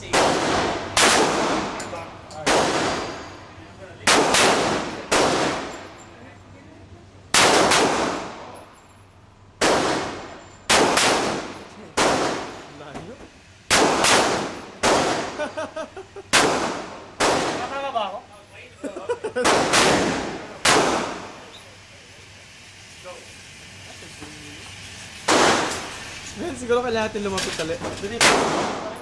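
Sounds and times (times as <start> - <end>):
echoing gunshots: 0.0 - 1.8, 2.4 - 3.4, 4.0 - 5.8, 7.3 - 8.5, 9.6 - 12.6, 13.7 - 15.4, 16.3 - 17.8, 19.4 - 21.4, 25.3 - 25.9, 28.2 - 29.0.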